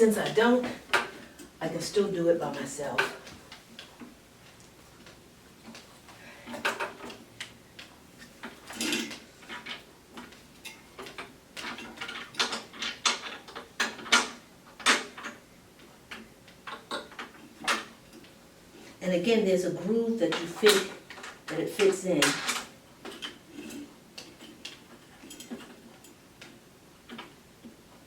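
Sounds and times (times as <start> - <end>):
machine parts clicking and rattling: 6.5 - 15.4, 20.3 - 27.8.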